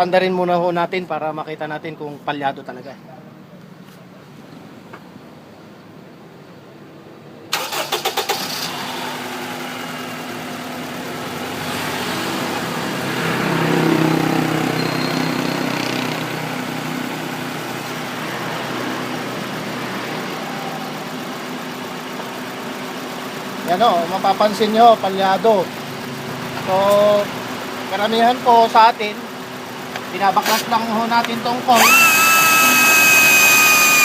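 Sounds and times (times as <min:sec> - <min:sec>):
engine starter cranking: 0:07.5 - 0:09.0, 0:31.8 - 0:34.0
car engine misfiring at idle: 0:07.5 - 0:11.6.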